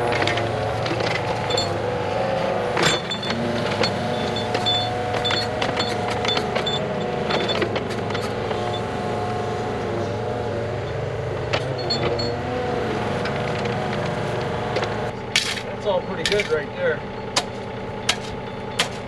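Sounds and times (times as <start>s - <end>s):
digging machine engine running: 0.0s - 19.0s
stone and metal clanking: 0.1s - 1.8s, 15.3s - 16.7s.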